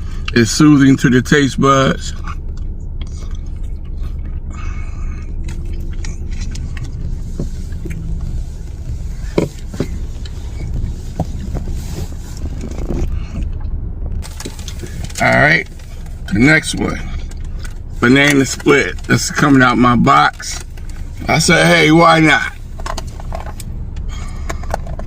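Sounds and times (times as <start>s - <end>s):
vehicle engine idling: 0.0s - 25.0s
small clicks and scrapes: 5.4s - 16.2s, 22.7s - 25.0s.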